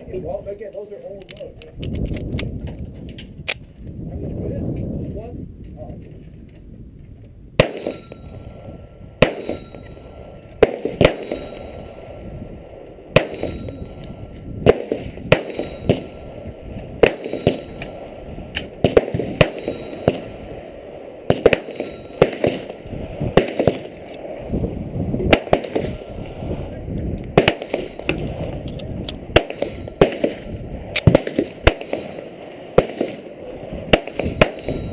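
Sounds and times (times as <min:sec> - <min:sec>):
gunshots with short echo: 0:07.6 - 0:08.4, 0:09.2 - 0:10.0, 0:10.6 - 0:12.1, 0:13.1 - 0:14.0, 0:14.6 - 0:16.4, 0:17.0 - 0:18.0, 0:18.7 - 0:20.5, 0:21.3 - 0:24.0, 0:25.3 - 0:26.1, 0:27.3 - 0:28.4, 0:29.3 - 0:33.3, 0:33.9 - 0:34.9.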